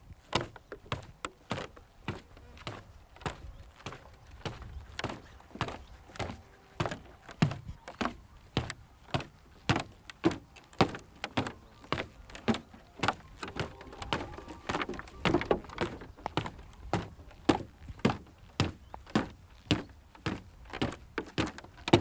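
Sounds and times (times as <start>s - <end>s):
footsteps on wooden boards: 0.0s - 22.0s.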